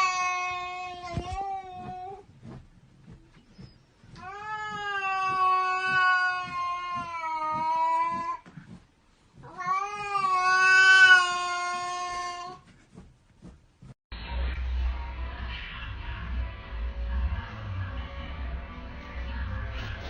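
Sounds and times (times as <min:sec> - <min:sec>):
cat yowling: 0:09.5 - 0:12.6.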